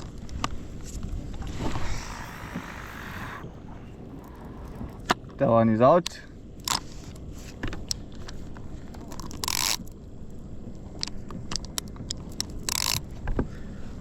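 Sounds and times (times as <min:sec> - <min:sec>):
fishing tackle clicks and scrapes: 0:00.0 - 0:05.4, 0:06.0 - 0:13.5
wind rumbling on microphone: 0:00.0 - 0:14.0
short hissing bursts: 0:01.5 - 0:03.5.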